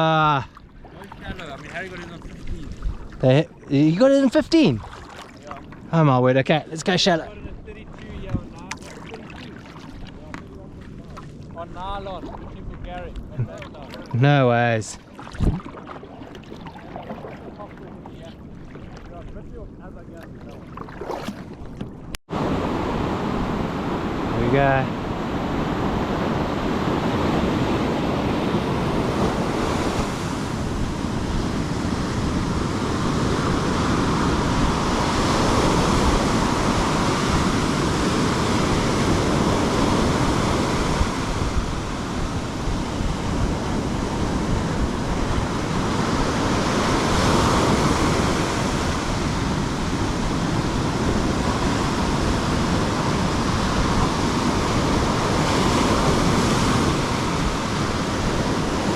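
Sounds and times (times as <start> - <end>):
sea waves washing: 0.0 - 58.9
wind noise on microphone: 1.2 - 3.3, 7.2 - 8.8, 9.9 - 13.7, 15.3 - 15.8, 25.0 - 58.9.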